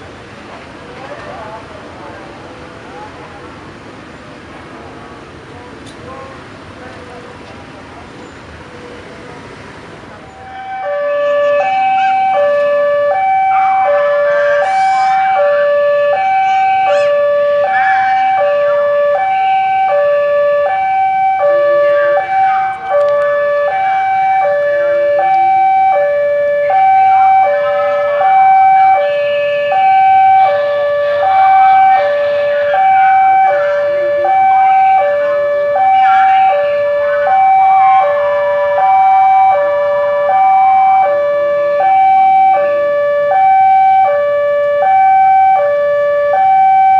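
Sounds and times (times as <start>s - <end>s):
level crossing warning siren: 10.2s - 46.9s.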